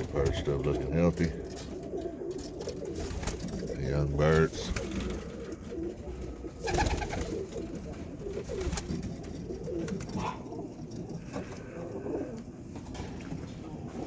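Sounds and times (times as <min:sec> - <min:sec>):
pigeons cooing: 0:00.0 - 0:14.0.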